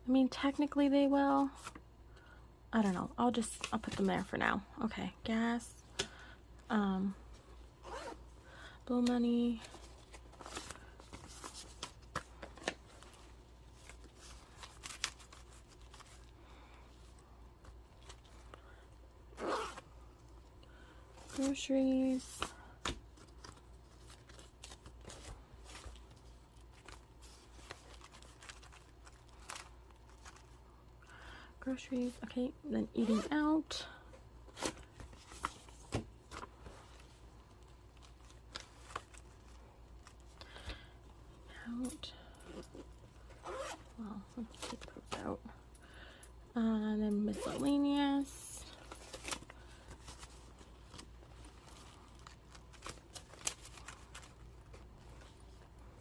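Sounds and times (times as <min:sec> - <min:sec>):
paper bills rustling: 0:23.1 - 0:30.6, 0:48.8 - 0:55.4.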